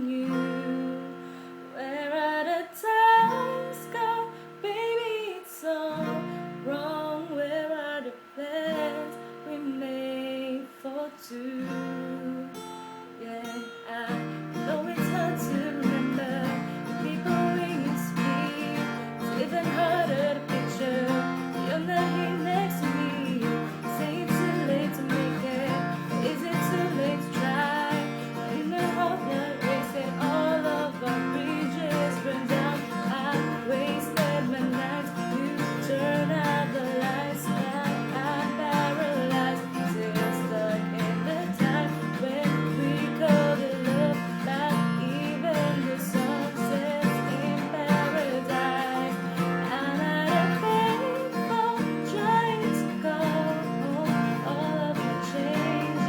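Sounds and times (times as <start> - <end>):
acoustic guitar: 0.0 - 56.0
woman singing: 0.0 - 56.0.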